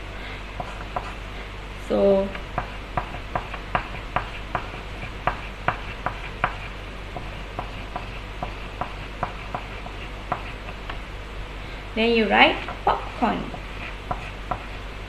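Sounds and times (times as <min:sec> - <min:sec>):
low electrical hum: 0:00.0 - 0:15.0
pen tapping on paper: 0:07.2 - 0:11.0.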